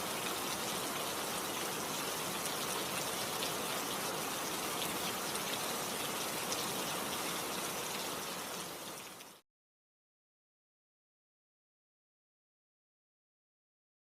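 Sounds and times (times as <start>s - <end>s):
heavy rain: 0.0s - 9.4s.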